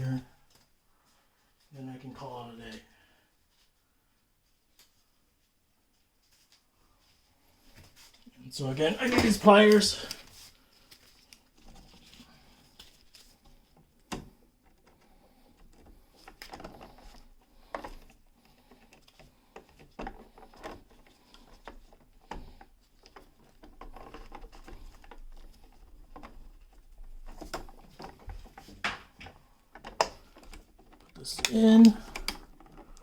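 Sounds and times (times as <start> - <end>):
pliers clicking and scraping wire: 29.7 - 33.0.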